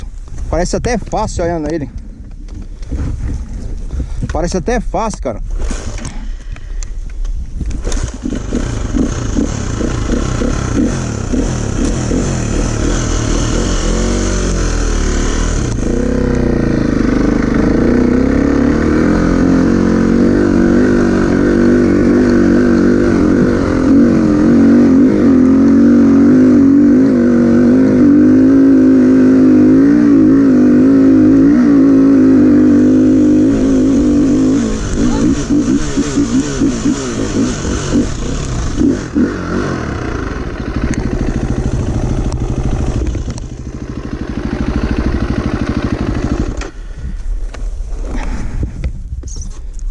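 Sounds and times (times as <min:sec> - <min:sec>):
off-road vehicle engine revving: 0:07.8 - 0:47.0.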